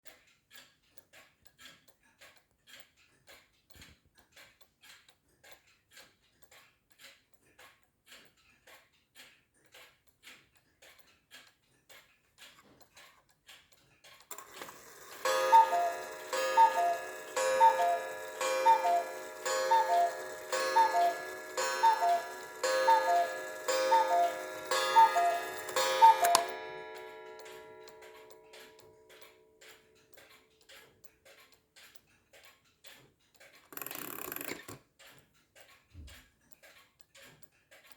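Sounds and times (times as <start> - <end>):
clock pendulum ticking: 0.1 - 37.9
clock mechanism whirring: 14.2 - 35.8
cuckoo clock calls: 14.3 - 29.3
ringing clock strike: 14.3 - 30.0.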